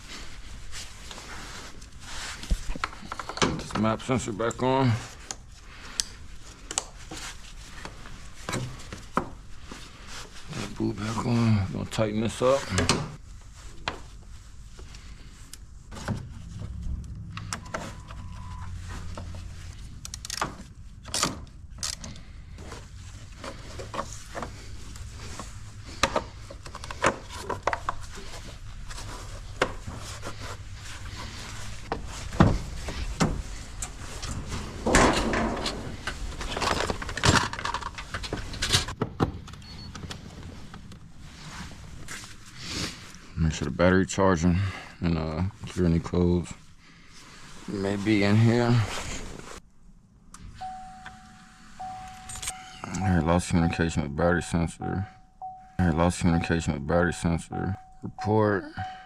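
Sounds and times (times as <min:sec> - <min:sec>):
faint low hum: 0:10.0 - 0:38.5
hand tools clicking and clunking: 0:51.8 - 0:53.1.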